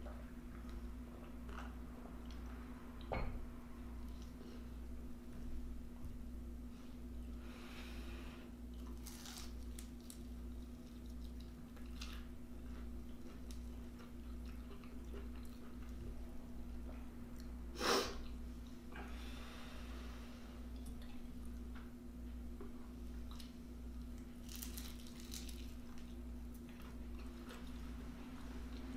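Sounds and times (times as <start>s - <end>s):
steady low hum: 0.0s - 28.9s
close-up chewing and mouth sounds: 8.7s - 17.6s, 23.1s - 28.0s.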